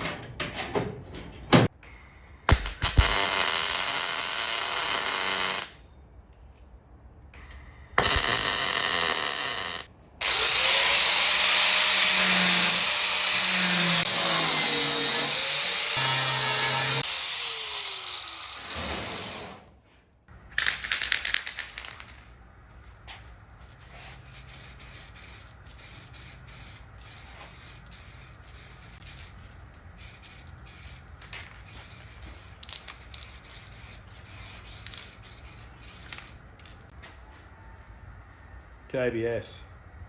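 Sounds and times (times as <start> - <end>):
power tool spinning down: 8.0 - 19.6.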